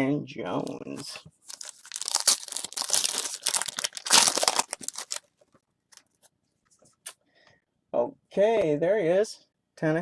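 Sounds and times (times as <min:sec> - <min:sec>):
wrapper tearing and crinkling: 0:01.4 - 0:05.3.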